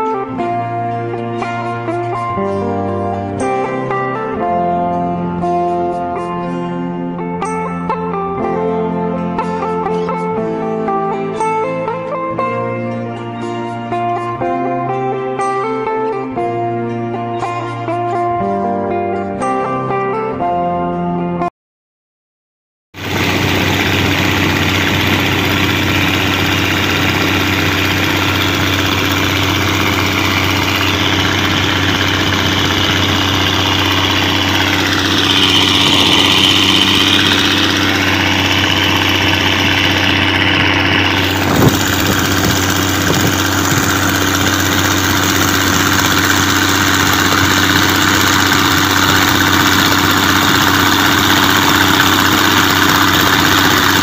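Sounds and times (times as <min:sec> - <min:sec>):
diesel engine running: 0:23.0 - 0:54.0
high whining tone: 0:23.0 - 0:54.0.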